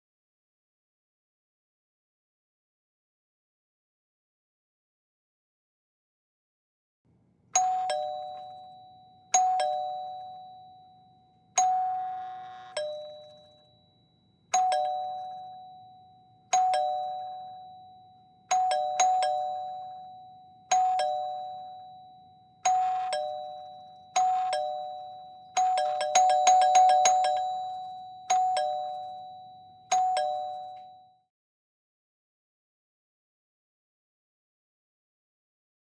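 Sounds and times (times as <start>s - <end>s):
two-note doorbell chime: 7.6s - 31.3s.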